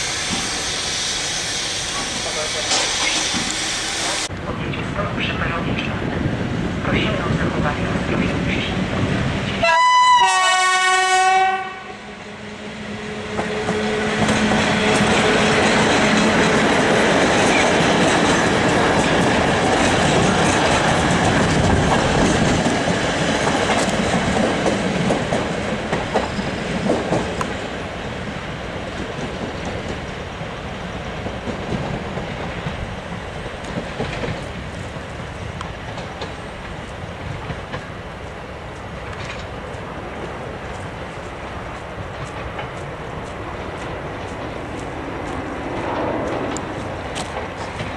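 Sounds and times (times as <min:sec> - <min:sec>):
train horn blast: 0:09.6 - 0:14.9
train wheels clattering over rail joints: 0:13.3 - 0:27.8, 0:31.1 - 0:38.0, 0:38.6 - 0:47.9.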